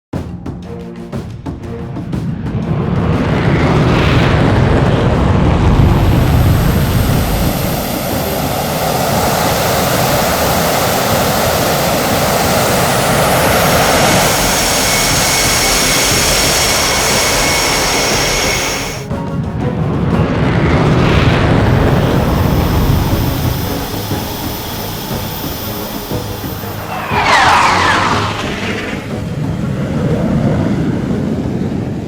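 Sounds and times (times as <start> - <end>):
jet engine roar: 1.9 - 19.1, 20.0 - 32.0
high-pitched whining tones: 4.5 - 19.1, 21.4 - 31.3.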